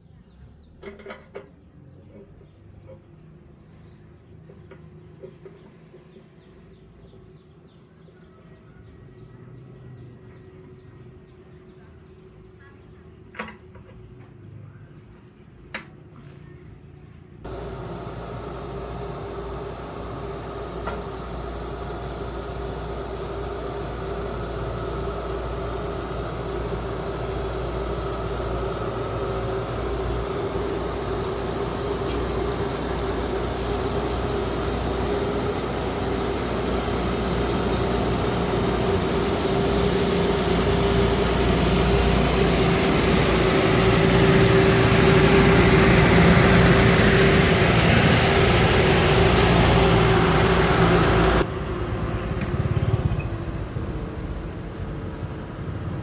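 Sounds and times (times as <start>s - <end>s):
small engine running: 17.4s - 56.0s.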